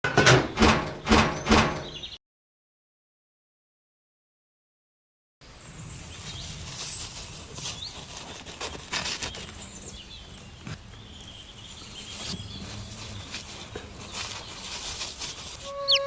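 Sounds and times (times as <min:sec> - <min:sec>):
chicks pattering and scratching: 0:05.8 - 0:16.0
chicks cheeping: 0:09.0 - 0:16.0.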